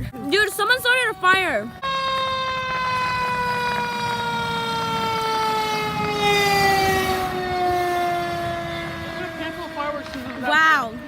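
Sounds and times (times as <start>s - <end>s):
fire truck siren: 0.2s - 11.0s.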